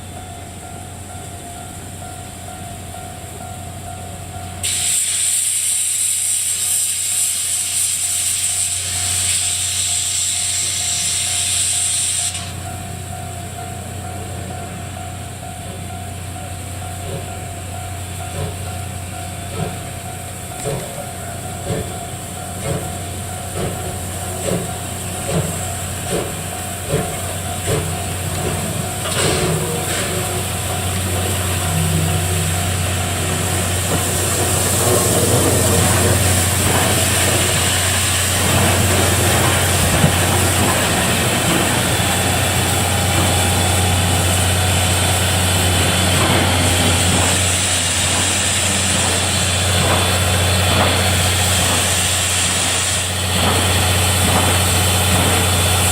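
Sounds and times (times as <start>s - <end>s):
steam locomotive low hum with beats: 0.0s - 55.9s
loud hiss of steam: 4.6s - 12.7s, 19.6s - 55.9s.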